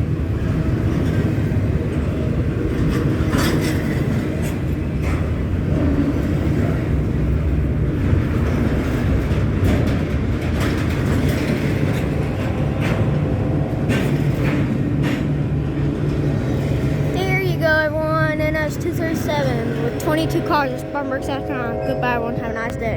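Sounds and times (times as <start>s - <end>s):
freight train rumbling past: 0.0s - 22.9s.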